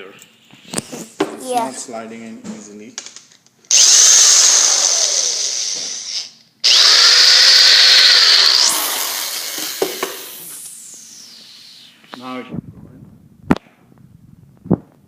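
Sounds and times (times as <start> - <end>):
power drill drilling wood: 3.7 - 11.9.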